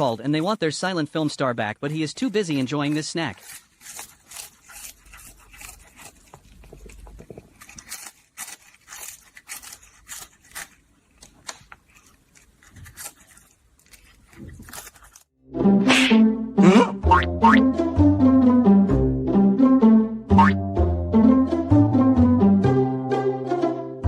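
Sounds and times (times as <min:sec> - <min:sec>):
pet chewing crunchy snack: 0:01.8 - 0:15.3.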